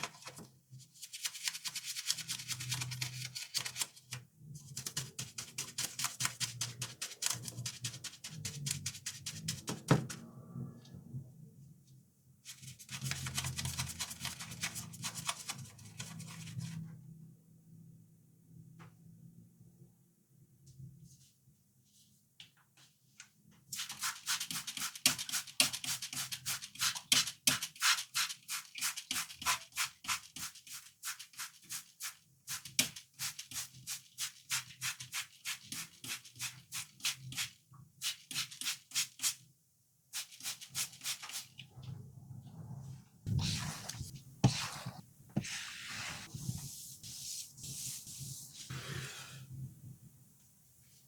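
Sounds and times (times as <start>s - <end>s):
brush scrubbing: 43.3s - 49.2s
rough rubbing sounds: 43.3s - 49.3s.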